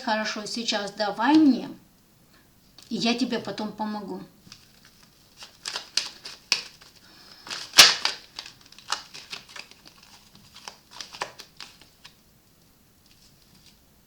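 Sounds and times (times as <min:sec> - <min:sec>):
cards snapping and tapping: 0:05.4 - 0:12.2.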